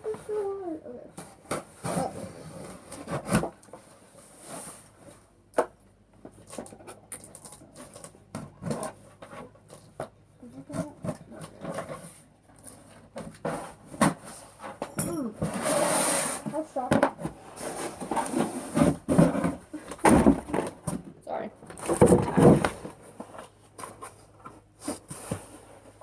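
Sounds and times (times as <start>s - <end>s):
cardboard scratching and rubbing: 15.5s - 20.6s.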